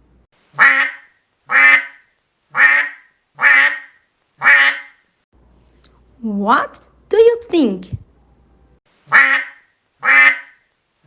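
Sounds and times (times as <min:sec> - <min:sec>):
duck quacking: 0:00.6 - 0:02.0, 0:02.6 - 0:05.0, 0:09.1 - 0:10.6.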